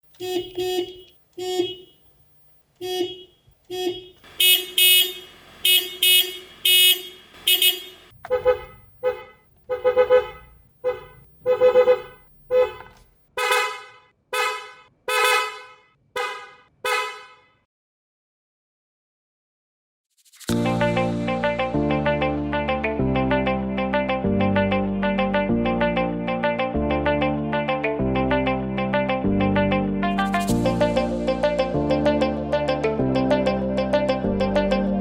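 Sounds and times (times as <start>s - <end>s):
car horn honking: 0.1s - 2.1s, 2.8s - 17.6s.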